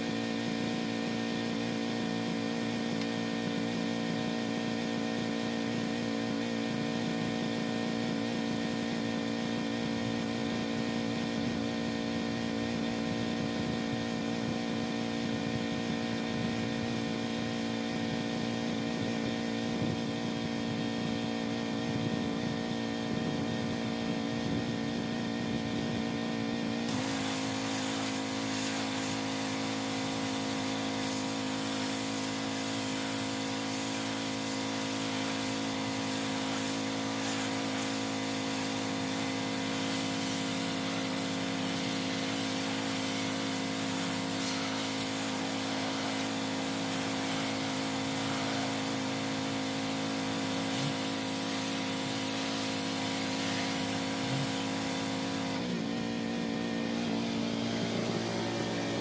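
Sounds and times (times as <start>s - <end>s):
pressure washer engine hum: 0.0s - 59.0s
high-pressure water spray hiss: 26.8s - 56.1s.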